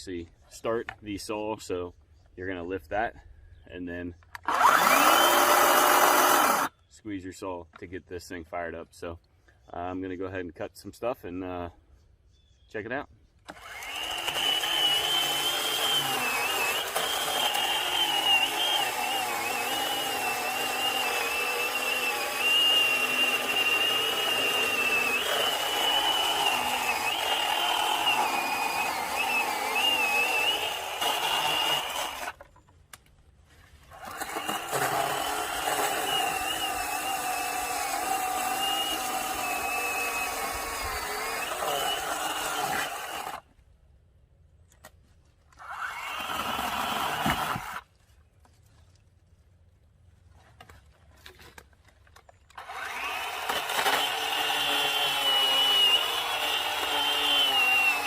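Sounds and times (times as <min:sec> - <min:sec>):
electric chainsaw cutting: 0:04.4 - 0:06.7, 0:13.5 - 0:32.4, 0:34.0 - 0:43.4, 0:45.6 - 0:47.8, 0:52.6 - 0:58.0.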